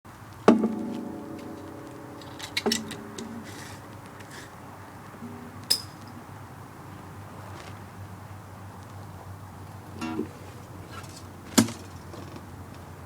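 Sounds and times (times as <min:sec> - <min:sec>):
plucked string chord ringing: 0:00.5 - 0:07.3, 0:10.0 - 0:10.8
sharp ringing clink: 0:00.8 - 0:06.3.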